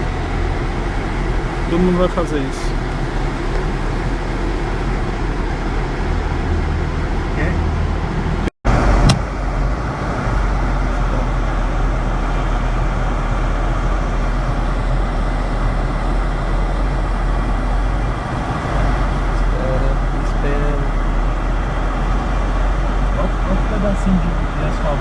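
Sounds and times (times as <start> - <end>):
steady rain: 0.0 - 8.4
vehicle engine rumble: 0.0 - 25.0.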